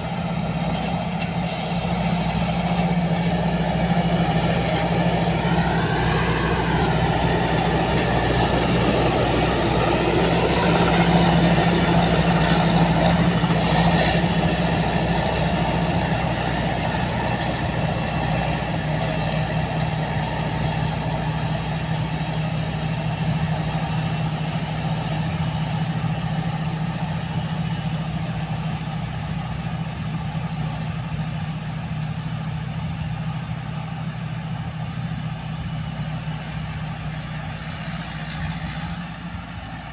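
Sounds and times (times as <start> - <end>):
diesel engine running: 0.0 - 39.9
short hiss: 1.3 - 3.0, 13.6 - 14.7.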